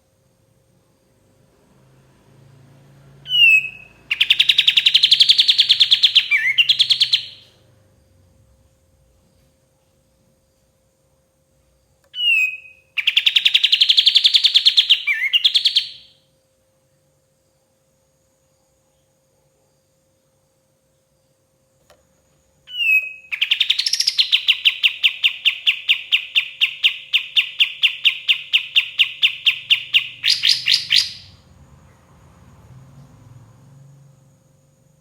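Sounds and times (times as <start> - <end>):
songbird singing rapid notes: 3.3 - 7.6, 12.2 - 16.1, 22.7 - 31.4.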